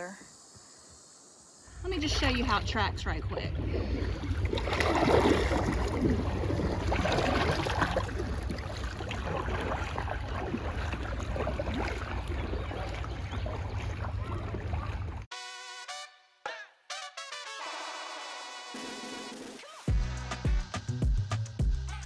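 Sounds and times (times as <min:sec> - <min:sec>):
kayak paddle splashing water: 0:01.7 - 0:15.3
wind rumbling on microphone: 0:01.7 - 0:15.3.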